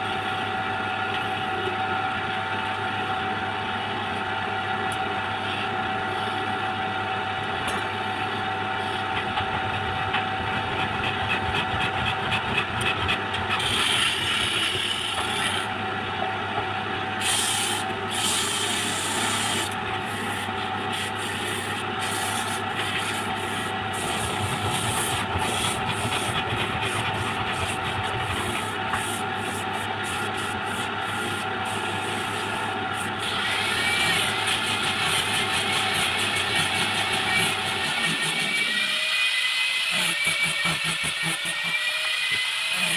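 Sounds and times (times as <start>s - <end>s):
wood lathe running: 7.9s - 16.0s, 17.1s - 42.9s
tool rasping against wood: 9.0s - 15.7s, 17.2s - 32.4s, 33.2s - 38.9s.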